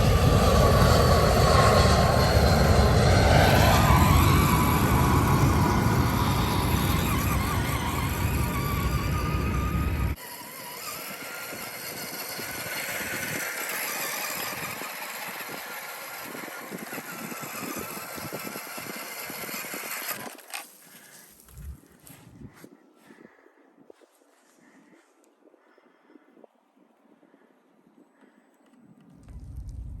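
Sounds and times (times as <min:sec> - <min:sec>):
electric motor whining: 0:00.0 - 0:20.8.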